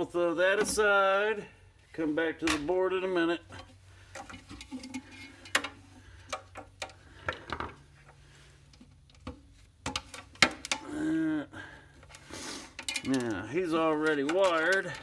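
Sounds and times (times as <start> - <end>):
clicks of scrap parts handled: 12.0 - 15.0.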